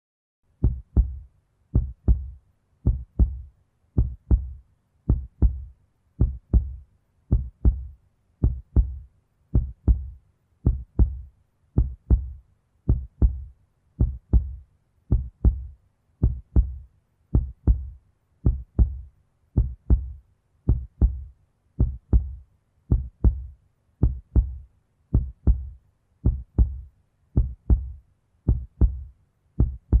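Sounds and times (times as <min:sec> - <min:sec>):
heartbeat thumps: 0:00.6 - 0:30.0.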